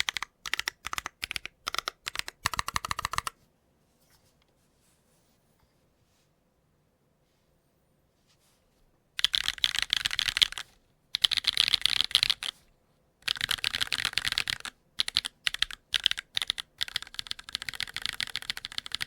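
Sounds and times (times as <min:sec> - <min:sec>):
fast typing on mechanical keyboard: 0:00.0 - 0:03.4, 0:09.2 - 0:12.6, 0:13.2 - 0:19.0.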